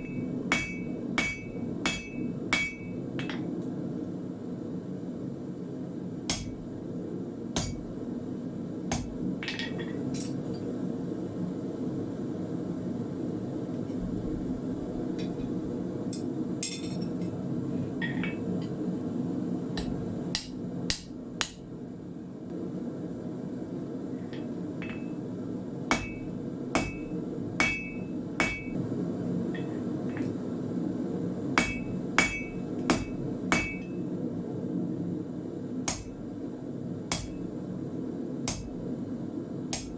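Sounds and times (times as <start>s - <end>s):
hammer striking iron on anvil: 0.0s - 3.5s, 6.3s - 6.6s, 7.6s - 7.9s, 8.9s - 10.4s, 19.8s - 21.6s, 25.9s - 28.8s, 31.6s - 34.0s, 35.9s - 36.2s, 37.1s - 37.4s, 38.5s - 38.8s
steady low rumble: 0.0s - 39.9s.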